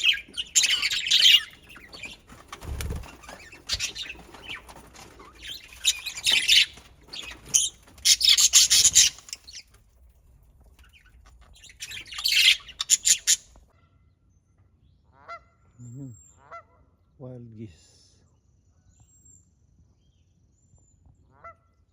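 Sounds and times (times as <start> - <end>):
budgies chirping: 0.0 - 9.8, 10.7 - 13.6.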